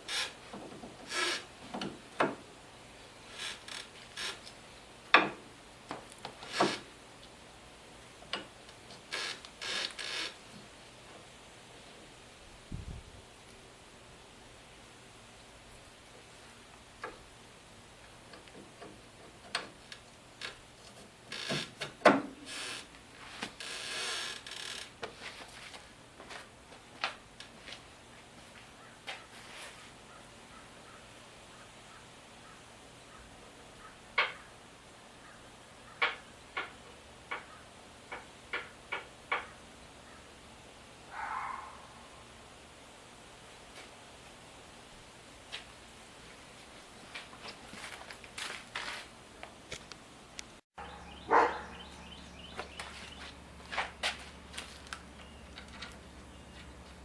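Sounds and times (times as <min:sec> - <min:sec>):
metal scraping rasps: 0:01.0 - 0:01.5.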